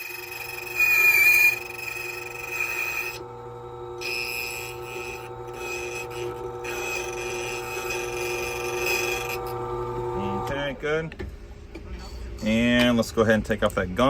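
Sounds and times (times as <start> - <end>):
key cutting machine motor hum: 0.0 - 10.6
cutting wheel rasping on key: 4.0 - 9.6.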